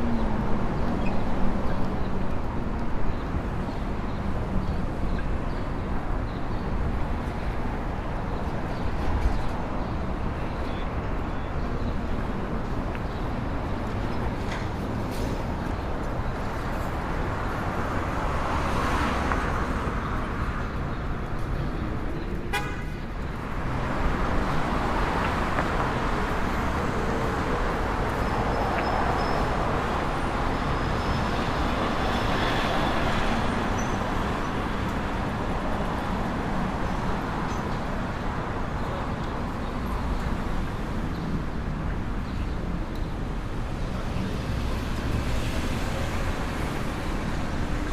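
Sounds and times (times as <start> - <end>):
cars passing: 11.9 - 47.9
car horns tooting: 22.5 - 22.9.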